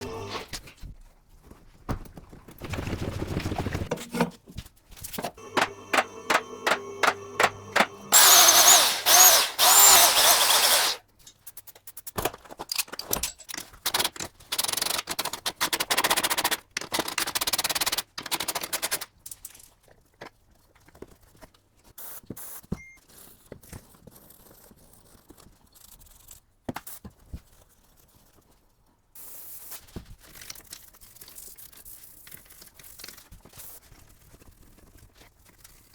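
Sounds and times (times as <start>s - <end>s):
power tool running: 0.0s - 0.5s, 5.4s - 11.0s.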